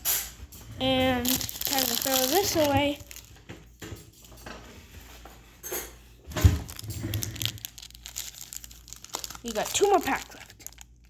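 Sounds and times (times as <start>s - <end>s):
wrapper crinkling: 0.8s - 3.5s, 6.3s - 11.0s.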